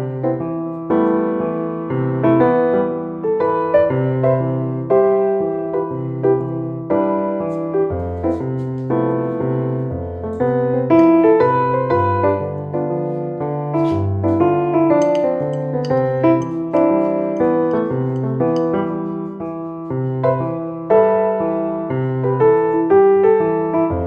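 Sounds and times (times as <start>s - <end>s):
gentle piano piece: 0.0s - 24.0s.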